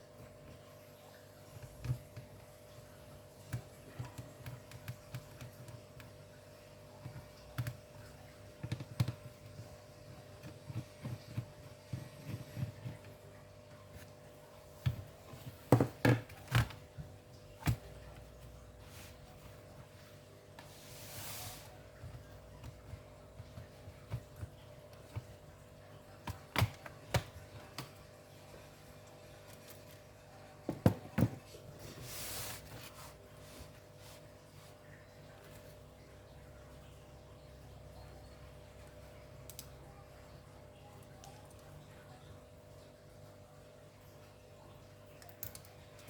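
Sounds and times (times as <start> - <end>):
faint steady hum: 0.0 - 46.0.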